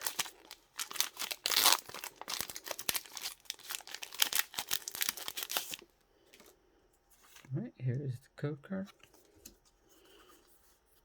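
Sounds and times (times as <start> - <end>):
foil wrapper ripping: 0.0 - 5.8
foil wrapper crinkling: 0.0 - 6.5.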